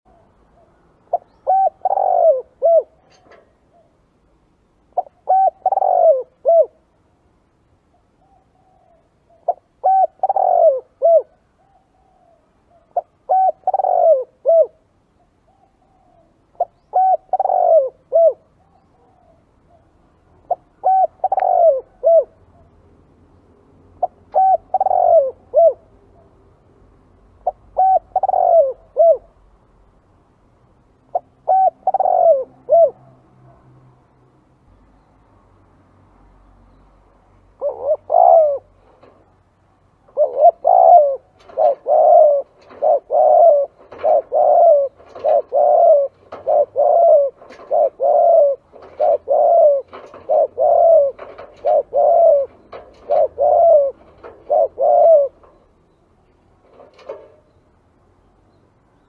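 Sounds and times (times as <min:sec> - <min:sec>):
dove cooing: 0:00.0 - 0:04.1, 0:04.9 - 0:06.8, 0:07.9 - 0:22.8, 0:24.0 - 0:26.4, 0:27.4 - 0:29.4, 0:31.1 - 0:33.2, 0:37.5 - 0:39.4, 0:40.0 - 0:55.9, 0:56.6 - 0:57.5.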